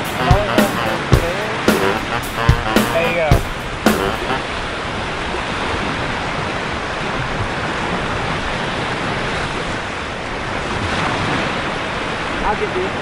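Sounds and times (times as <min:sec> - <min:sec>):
small waves breaking on sand: 0:04.5 - 0:13.0.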